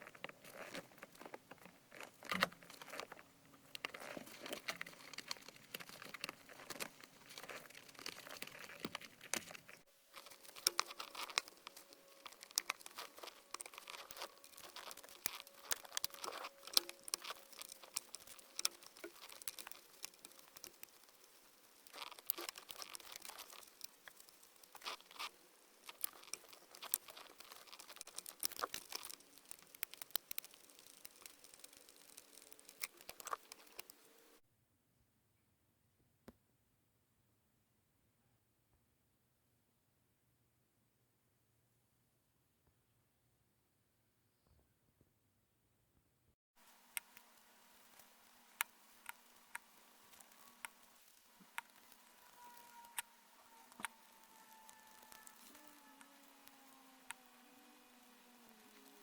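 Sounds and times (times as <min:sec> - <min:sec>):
light rustling and crinkling: 0:00.0 - 0:34.4, 0:46.6 - 0:59.0
small clicks and knocks of tools: 0:03.8 - 0:34.1.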